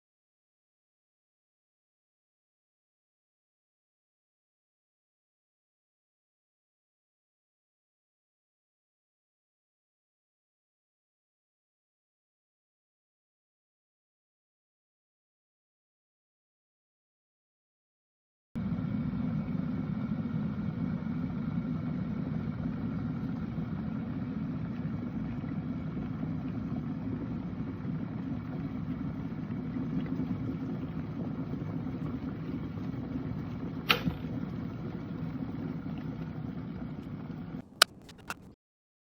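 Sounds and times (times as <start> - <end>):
electric kettle heating rumble: 18.6 - 38.6
faint hum: 18.6 - 38.6
kettle switch click: 33.9 - 34.2, 37.8 - 38.5.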